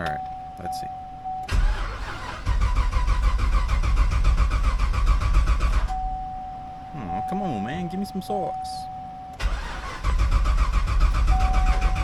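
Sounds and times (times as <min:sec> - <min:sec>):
starter motor cranking engine: 0:01.5 - 0:05.9, 0:09.4 - 0:12.0.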